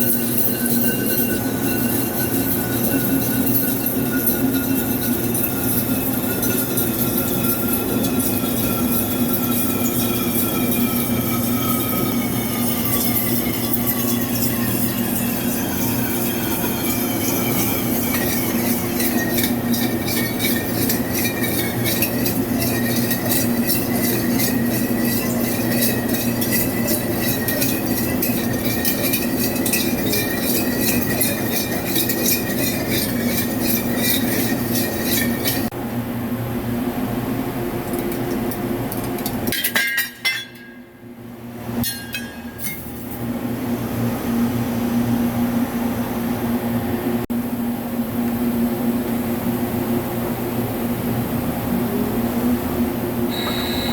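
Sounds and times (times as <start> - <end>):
lathe machining hum: 0.0 - 37.7, 49.2 - 53.9.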